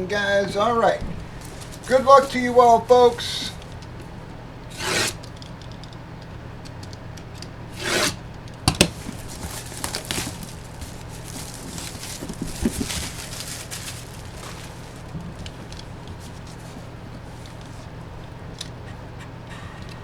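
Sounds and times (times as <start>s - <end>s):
steady low hum: 0.0s - 20.0s
cardboard ripping: 1.0s - 3.8s, 4.7s - 5.3s, 7.7s - 17.9s
cardboard rubbing and scraping: 1.0s - 4.1s, 4.7s - 5.3s, 7.7s - 18.4s.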